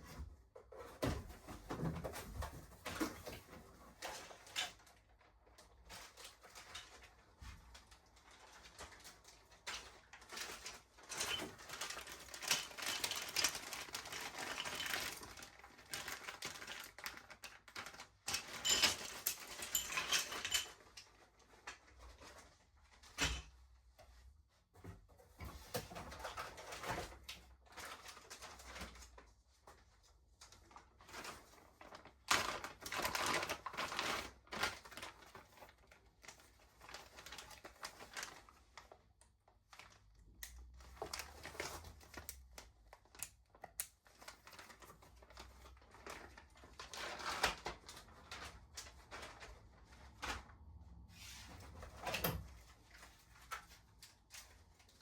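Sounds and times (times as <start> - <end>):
parts clattering: 18.3 - 21.2.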